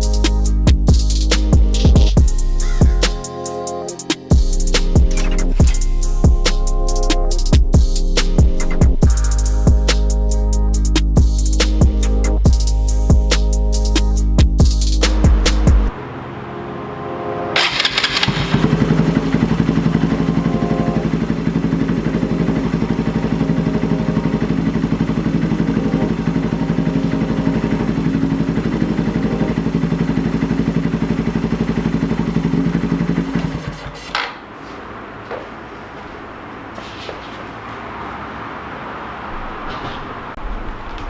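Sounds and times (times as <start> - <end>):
motorcycle engine starting and idling: 4.3 - 6.7, 17.2 - 38.2.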